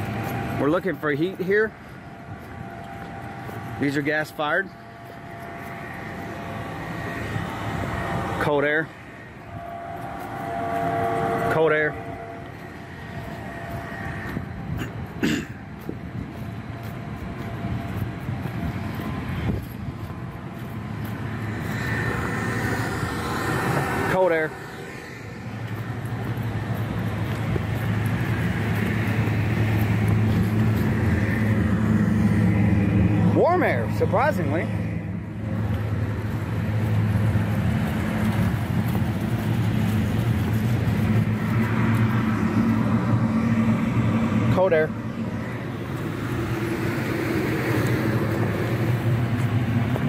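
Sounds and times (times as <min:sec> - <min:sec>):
rooftop hvac units running: 0:00.0 - 0:50.0
faint high whine: 0:01.7 - 0:14.7.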